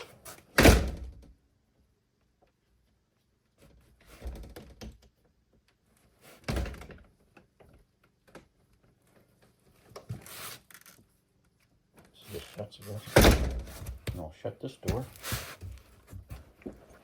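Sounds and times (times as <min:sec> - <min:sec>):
wooden door knocks and thuds: 0:00.6 - 0:01.3, 0:04.2 - 0:05.0, 0:06.5 - 0:07.1, 0:13.2 - 0:14.2.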